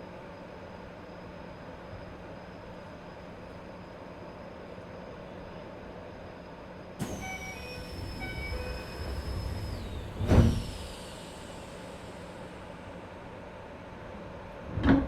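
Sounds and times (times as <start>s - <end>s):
sliding doors thumping shut: 7.0s - 11.1s
air hiss and high whistle: 7.0s - 13.0s.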